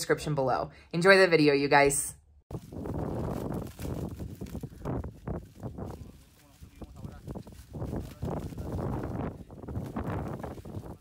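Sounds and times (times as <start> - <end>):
wind buffeting microphone: 2.5 - 11.0.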